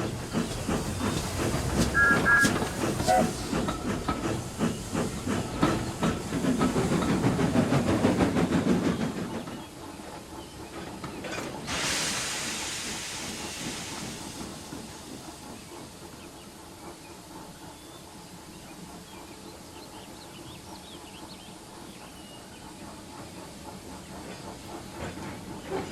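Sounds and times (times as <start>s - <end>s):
hiss of released steam: 0.0s - 8.0s, 11.5s - 16.8s
steam engine chuffing: 0.0s - 11.0s, 11.7s - 19.1s.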